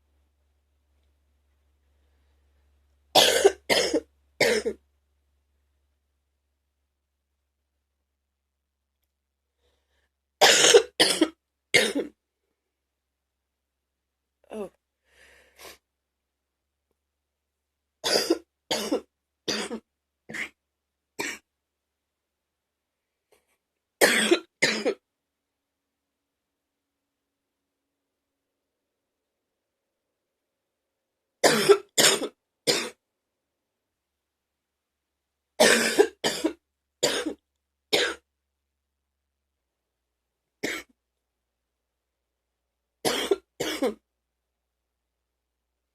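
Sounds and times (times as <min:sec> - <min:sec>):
woman coughing: 0:03.2 - 0:04.8, 0:24.0 - 0:25.0, 0:31.4 - 0:33.0, 0:35.6 - 0:37.4, 0:43.1 - 0:44.0.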